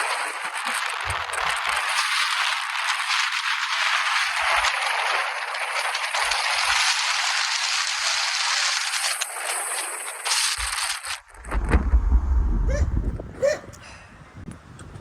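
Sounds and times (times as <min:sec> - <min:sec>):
rain patter: 0:00.0 - 0:12.7
faint low thumps: 0:11.3 - 0:13.5.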